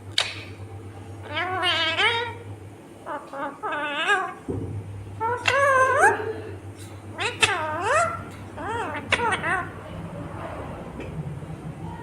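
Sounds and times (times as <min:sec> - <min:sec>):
parakeet warbling calls: 0:01.2 - 0:04.5, 0:05.2 - 0:06.3, 0:07.1 - 0:09.9.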